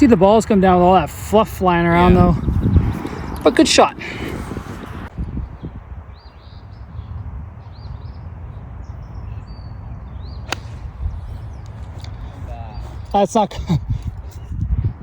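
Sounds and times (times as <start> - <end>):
wind rumble on microphone: 0.0 - 15.0
small birds chirping: 2.0 - 15.0
golf club striking ball: 10.5 - 12.2.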